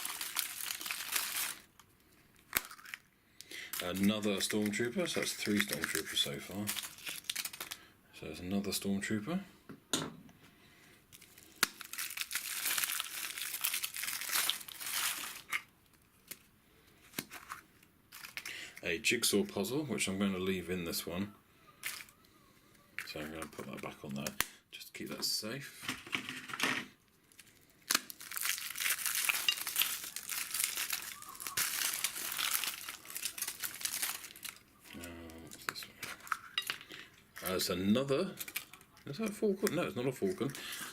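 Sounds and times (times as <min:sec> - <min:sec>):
wrapper crinkling and rustling: 0:00.0 - 0:07.9, 0:11.1 - 0:18.6, 0:21.8 - 0:22.2, 0:27.2 - 0:40.9.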